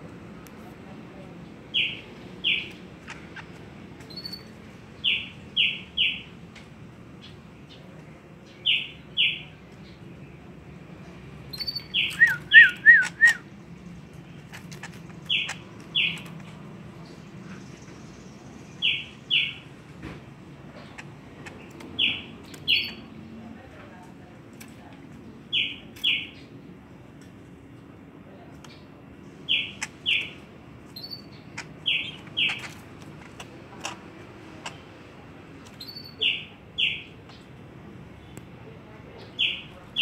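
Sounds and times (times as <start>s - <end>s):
pet bird chirping: 1.6s - 6.3s, 8.4s - 10.0s, 11.5s - 19.7s, 20.6s - 23.2s, 25.5s - 26.6s, 28.7s - 35.0s, 35.6s - 37.5s, 39.1s - 40.0s.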